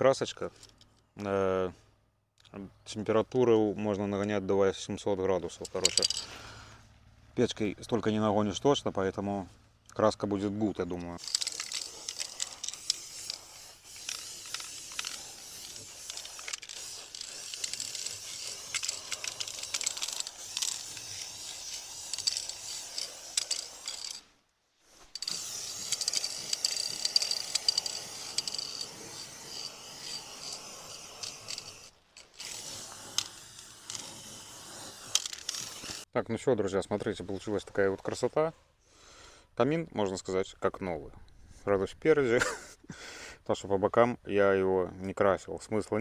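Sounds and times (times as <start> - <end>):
spray paint hissing: 5.6 - 6.4, 11.2 - 24.3, 24.9 - 36.1.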